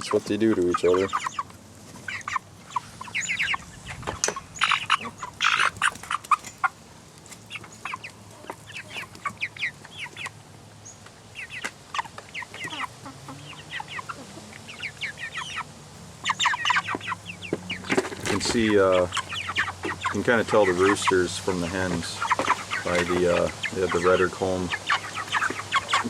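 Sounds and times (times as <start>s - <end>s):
chickens clucking and peeping: 0.0s - 26.0s.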